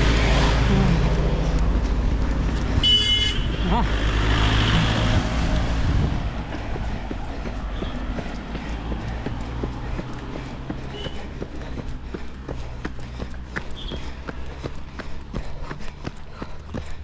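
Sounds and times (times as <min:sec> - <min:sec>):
vehicle engine with road noise: 0:00.0 - 0:17.0
short horn beep: 0:02.8 - 0:03.6.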